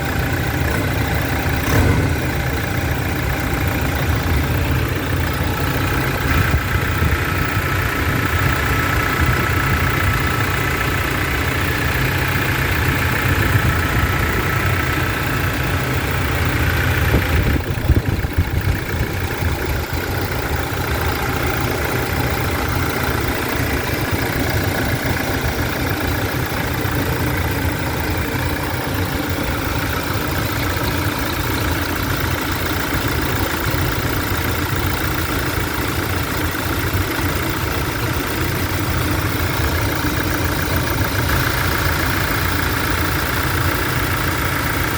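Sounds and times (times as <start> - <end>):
diesel engine idling: 0.0 - 44.9
high whine: 1.6 - 5.1.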